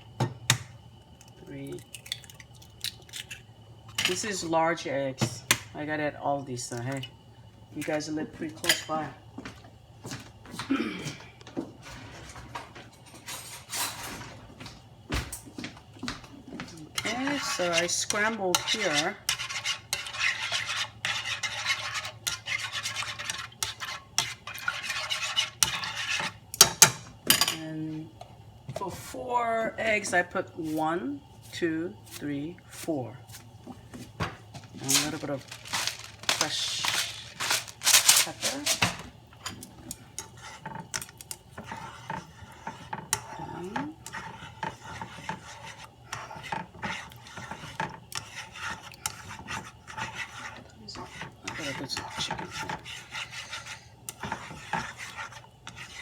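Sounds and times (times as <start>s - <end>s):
eggs beaten in a bowl: 16.5s - 27.1s, 34.8s - 56.0s
pepper mill grinding: 34.8s - 39.0s.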